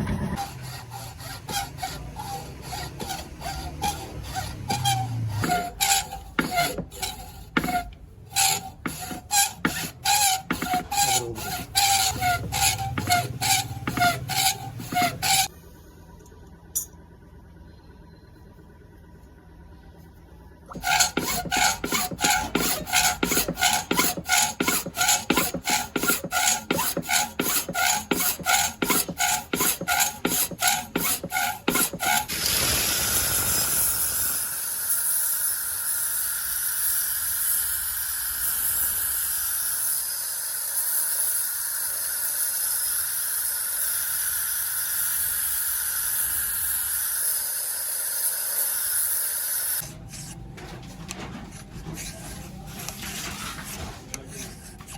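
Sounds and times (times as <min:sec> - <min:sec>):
file scraping on knife blade: 0:00.2 - 0:15.5, 0:20.8 - 0:32.3, 0:51.5 - 0:54.9
steady hissing whir: 0:32.3 - 0:50.3.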